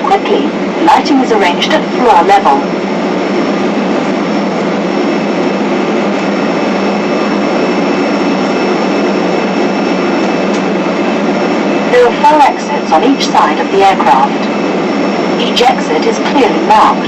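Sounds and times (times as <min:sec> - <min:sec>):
jet engine and cabin air noise: 0:00.0 - 0:17.0.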